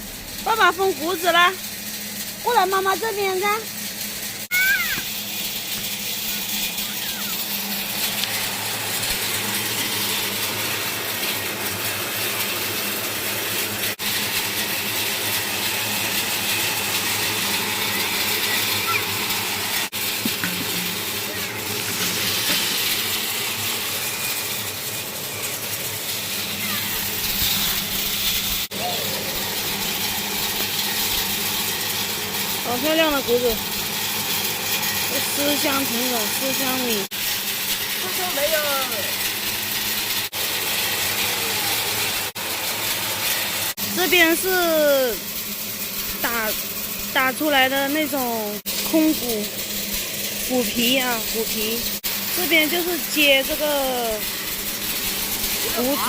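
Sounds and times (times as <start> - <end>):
fan air and grain hissing: 0.0 - 56.0
low machine hum: 0.0 - 56.0.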